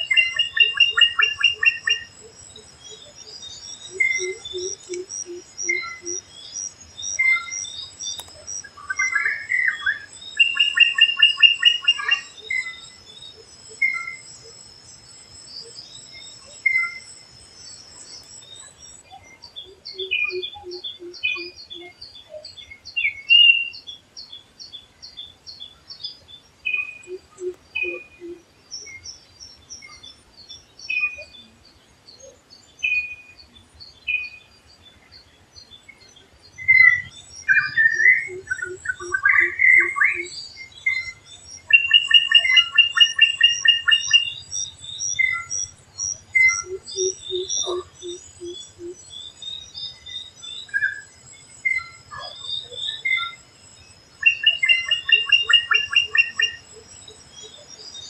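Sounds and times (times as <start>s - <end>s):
birds chirping and whistling: 0.0s - 14.4s, 16.1s - 22.0s, 36.6s - 53.4s, 54.1s - 58.0s
bird trills: 3.9s - 6.2s, 36.6s - 44.5s, 54.2s - 56.7s.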